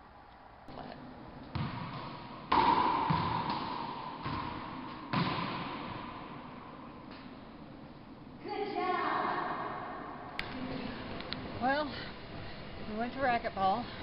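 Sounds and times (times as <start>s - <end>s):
sharp thumps with echoing ring: 1.5s - 6.7s.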